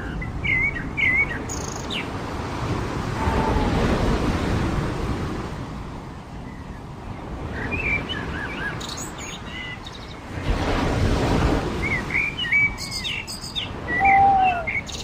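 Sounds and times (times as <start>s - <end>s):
surf washing onto beach: 2.2s - 6.0s, 10.2s - 12.4s
small birds chirping: 11.9s - 15.0s.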